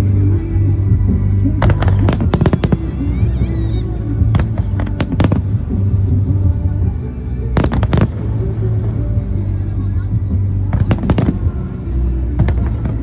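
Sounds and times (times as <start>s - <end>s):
music with low bass: 0.0s - 13.0s
fireworks bangs: 1.6s - 3.6s, 4.3s - 5.9s, 7.6s - 9.2s, 10.8s - 11.8s.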